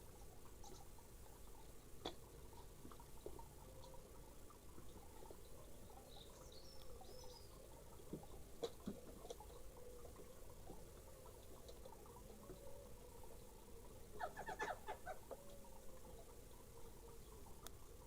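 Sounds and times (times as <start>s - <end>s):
low steady hum: 0.0s - 18.0s
small birds chirping: 4.9s - 17.7s.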